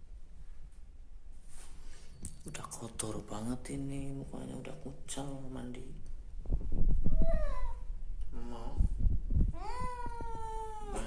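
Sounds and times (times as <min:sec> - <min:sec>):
cat meowing: 0:09.6 - 0:11.0.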